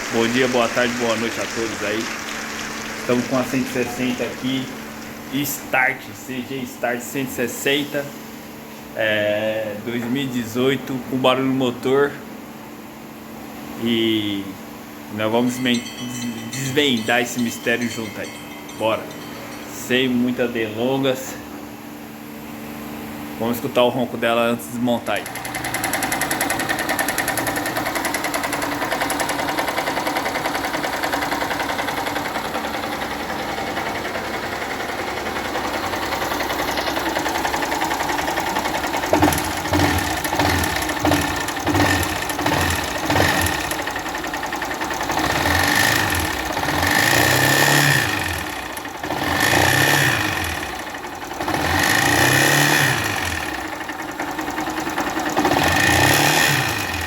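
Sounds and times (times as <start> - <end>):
motorcycle engine idling and revving: 25.0 - 57.0.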